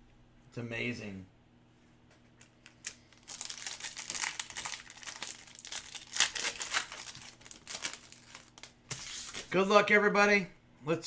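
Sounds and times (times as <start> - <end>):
plastic wrapping crinkling: 2.5 - 9.6
plastic wrapping tearing: 2.6 - 9.5.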